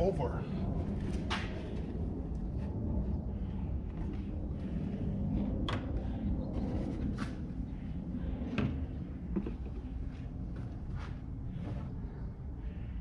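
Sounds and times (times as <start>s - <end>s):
steady low rumble: 0.0s - 13.0s.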